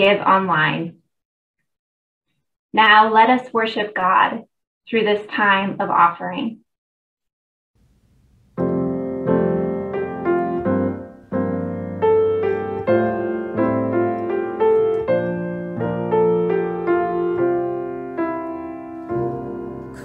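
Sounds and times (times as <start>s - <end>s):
piano chords: 8.4s - 20.0s.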